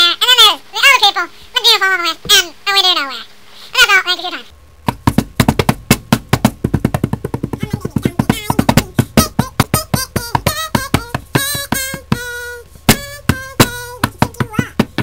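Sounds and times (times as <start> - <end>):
wavering vocal notes: 7.6 - 14.9.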